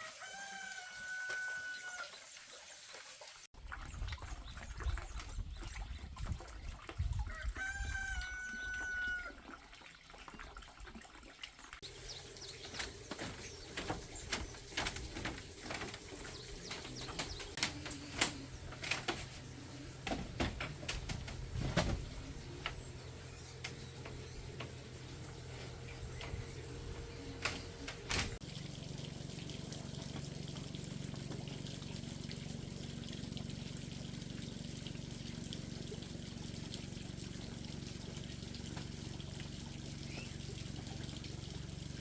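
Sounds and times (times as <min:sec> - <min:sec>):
rooster crowing: 0:00.0 - 0:02.1, 0:07.3 - 0:09.4
irregular clicks and knocks: 0:12.6 - 0:23.0.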